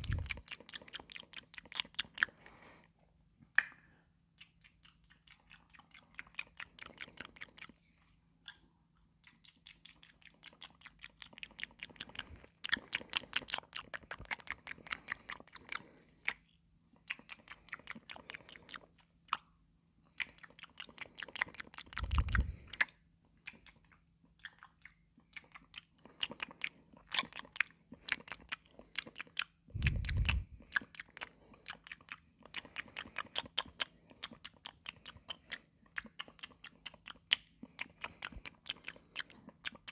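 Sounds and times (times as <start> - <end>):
mouth clicks: 0.0 - 2.4, 3.5 - 7.7, 20.1 - 39.9
crunchy cucumber chewing: 0.0 - 2.8, 3.6 - 39.9.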